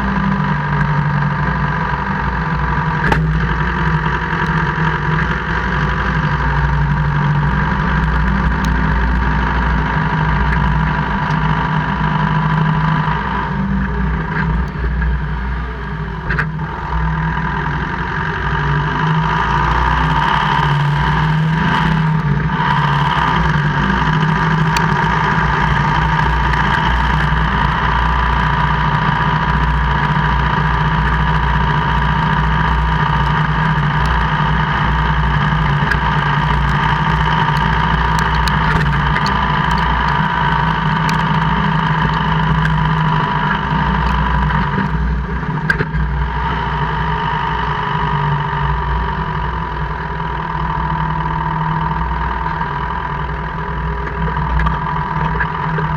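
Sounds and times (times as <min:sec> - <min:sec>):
car engine running: 0:00.0 - 0:55.9
sharp clicks: 0:02.8 - 0:07.4, 0:19.5 - 0:46.2
loud knock: 0:03.1 - 0:03.5.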